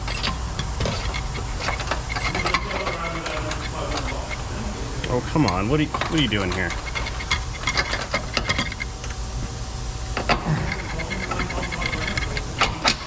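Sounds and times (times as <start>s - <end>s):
metal clinks and knocks: 0.0s - 9.2s
thin steady whine: 0.0s - 13.0s.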